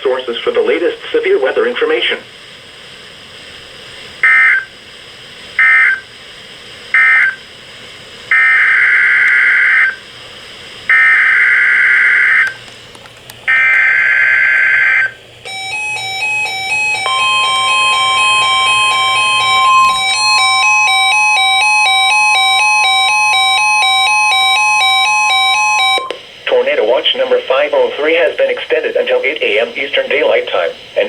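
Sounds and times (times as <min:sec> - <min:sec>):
steady warning alarm tone: 0:04.2 - 0:04.8, 0:05.5 - 0:06.2, 0:06.9 - 0:12.6, 0:13.5 - 0:31.0
screeching digital data bursts: 0:13.5 - 0:26.1
repeating electronic alert melody: 0:15.5 - 0:26.1.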